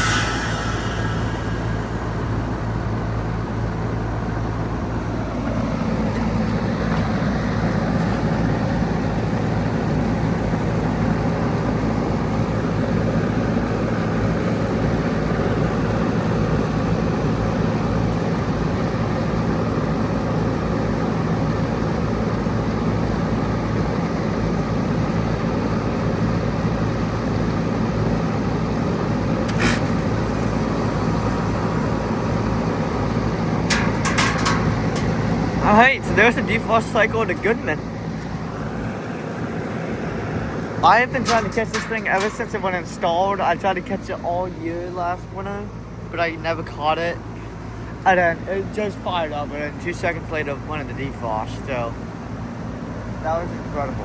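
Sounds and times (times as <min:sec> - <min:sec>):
falling tone: 0:00.0 - 0:02.9
condenser fan rushing: 0:00.0 - 0:54.0
heat pump hum: 0:00.0 - 0:54.0.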